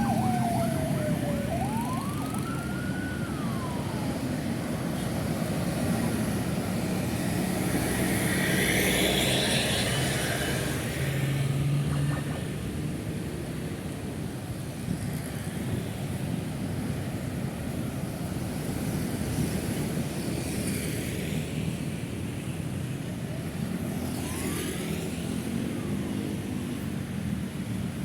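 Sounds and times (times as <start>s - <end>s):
emergency siren: 0.0s - 6.0s, 24.0s - 26.1s
city traffic: 0.0s - 28.0s.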